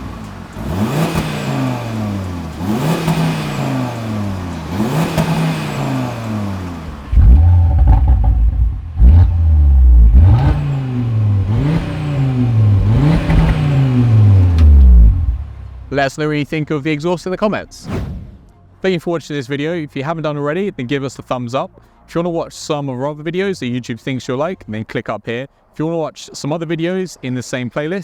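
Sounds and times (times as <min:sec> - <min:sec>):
car engine revving: 0:00.0 - 0:15.9.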